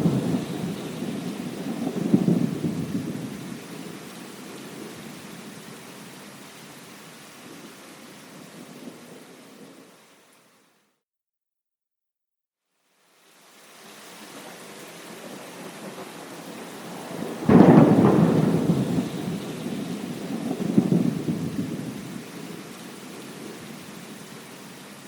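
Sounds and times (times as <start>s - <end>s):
rumbling thunderclap: 0.0s - 3.7s, 15.6s - 22.6s
steady rain hiss: 0.0s - 11.0s, 12.7s - 25.0s.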